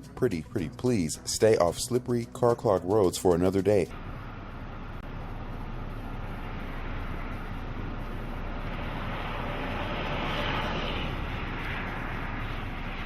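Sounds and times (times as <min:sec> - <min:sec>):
steady rushing noise: 0:03.9 - 0:13.0.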